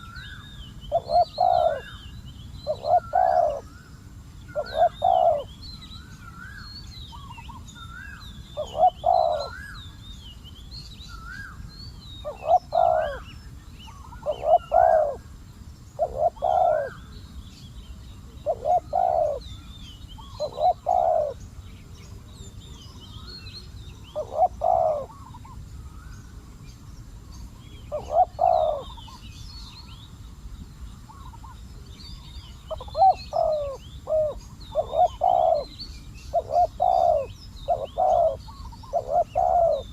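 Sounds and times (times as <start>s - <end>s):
small birds twittering: 0.0s - 39.9s
doves cooing: 0.9s - 2.1s, 2.7s - 3.8s, 4.5s - 5.5s, 8.0s - 9.8s, 12.2s - 13.3s, 13.9s - 15.3s, 16.0s - 17.1s, 18.3s - 19.5s, 20.2s - 21.5s, 24.1s - 25.6s, 27.9s - 29.2s, 32.6s - 39.9s.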